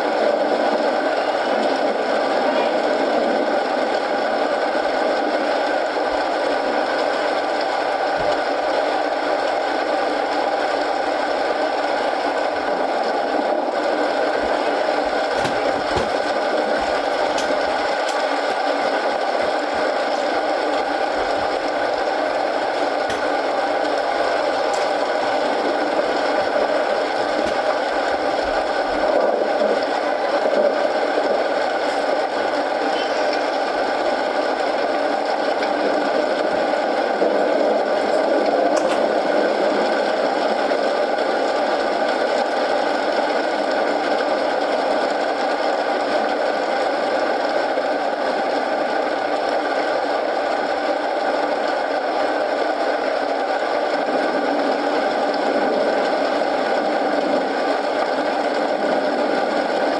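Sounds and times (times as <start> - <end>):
steady rain falling: 0.0 - 59.9
wood fire crackling: 4.6 - 37.7.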